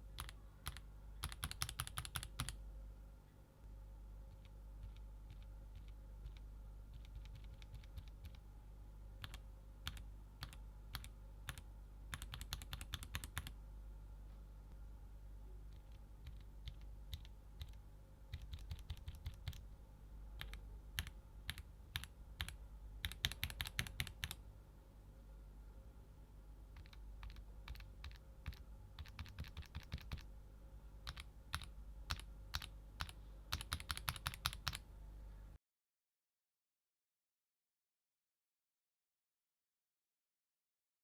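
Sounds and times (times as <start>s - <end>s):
mechanical keyboard keystrokes: 0.2s - 2.6s, 15.7s - 19.6s, 20.4s - 24.4s, 26.8s - 30.3s, 31.1s - 34.8s.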